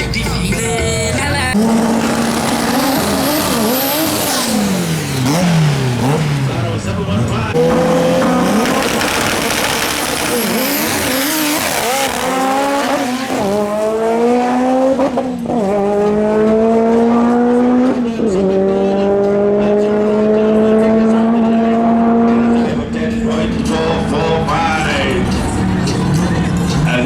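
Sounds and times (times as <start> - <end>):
car engine accelerating hard: 1.0 - 27.0
gear upshifts: 1.4 - 15.1.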